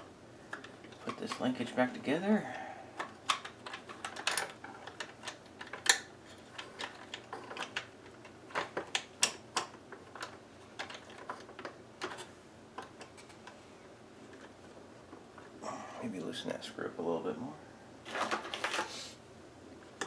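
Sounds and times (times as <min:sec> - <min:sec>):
plastic parts clicking and tapping: 0:00.5 - 0:01.6, 0:03.0 - 0:13.6.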